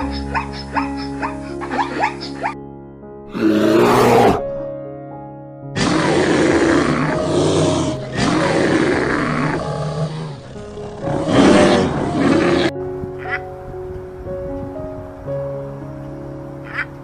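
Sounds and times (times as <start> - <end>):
background music: 0.0 - 17.0
large animal roaring: 3.3 - 4.6, 5.8 - 12.7.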